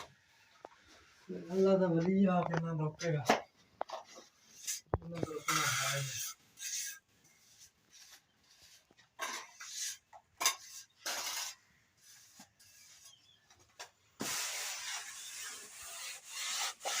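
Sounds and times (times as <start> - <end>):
trowel scraping plaster: 4.0 - 13.4, 14.2 - 17.0.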